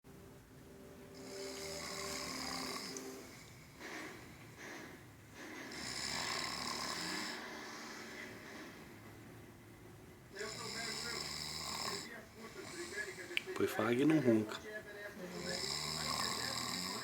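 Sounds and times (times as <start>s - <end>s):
man snoring: 1.2s - 3.5s, 5.7s - 8.1s, 10.4s - 13.2s, 15.4s - 17.0s
quiet breath: 1.2s - 9.6s, 10.4s - 13.5s.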